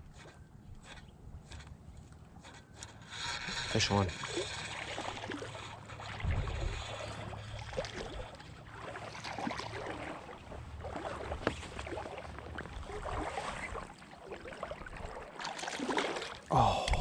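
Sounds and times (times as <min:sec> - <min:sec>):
rumble of moving water: 0:00.0 - 0:17.0
wind: 0:00.0 - 0:17.0
water splashing from fish: 0:04.2 - 0:17.0.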